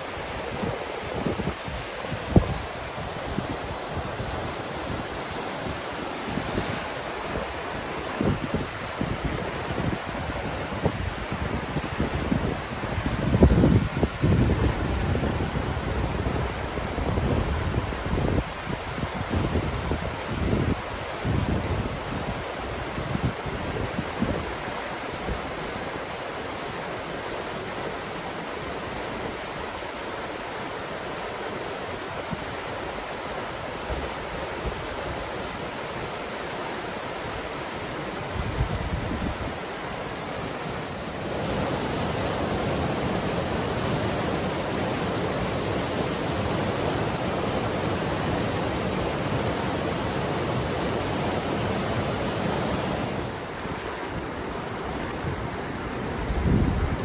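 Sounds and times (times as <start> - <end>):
wind on microphone: 0.0 - 25.7, 37.2 - 57.0
river water rushing: 0.0 - 57.0.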